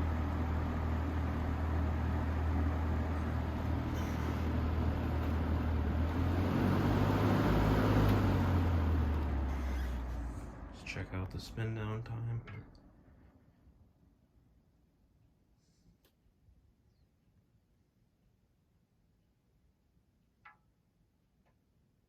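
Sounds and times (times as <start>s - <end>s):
box fan motor hum: 0.0s - 12.6s.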